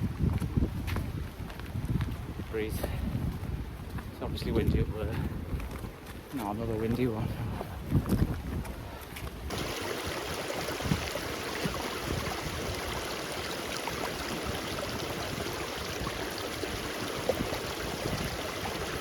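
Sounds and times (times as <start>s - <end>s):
mountain stream rushing: 9.5s - 19.0s.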